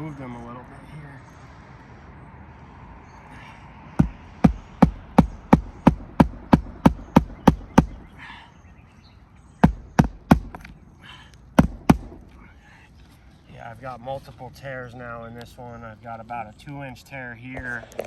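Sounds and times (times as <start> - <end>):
hammer driving nails into shingles: 4.0 - 8.0, 9.6 - 10.7, 11.6 - 12.2.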